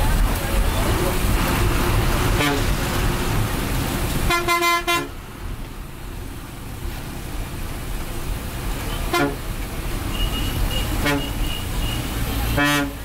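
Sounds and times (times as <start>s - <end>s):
bus engine and road rumble: 0.0s - 13.0s
vehicle horn: 2.4s - 2.7s, 4.3s - 5.2s, 8.9s - 9.4s, 10.1s - 13.0s.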